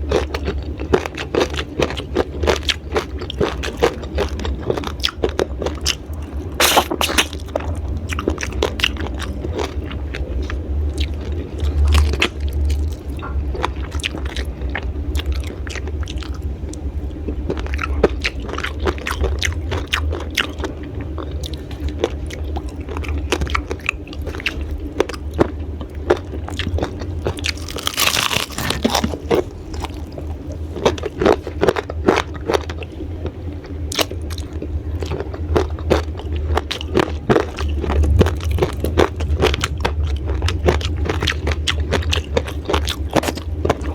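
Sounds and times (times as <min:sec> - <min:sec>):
steady low hum: 0:00.0 - 0:43.9
crunching raw vegetables: 0:15.2 - 0:43.9.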